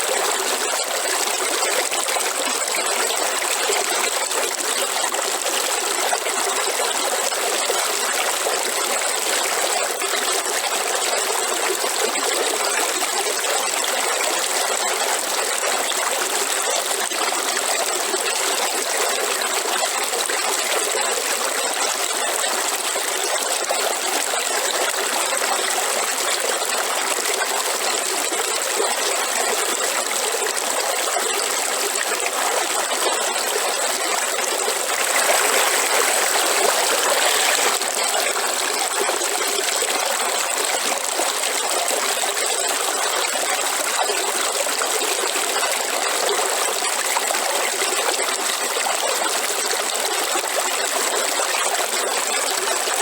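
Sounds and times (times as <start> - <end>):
waterfall rushing: 35.0 - 37.9.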